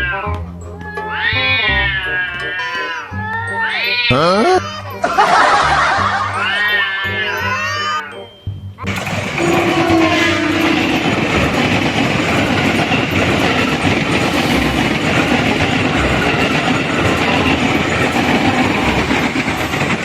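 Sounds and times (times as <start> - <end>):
electric train passing: 5.1 - 7.9, 8.9 - 20.0.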